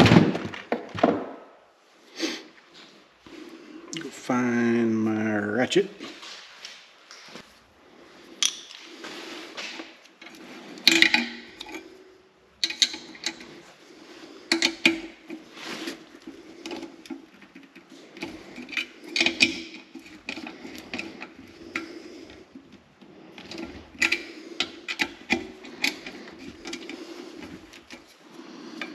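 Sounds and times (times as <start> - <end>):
metal tools clinking: 10.2 - 12.0, 12.6 - 13.7, 14.5 - 22.4.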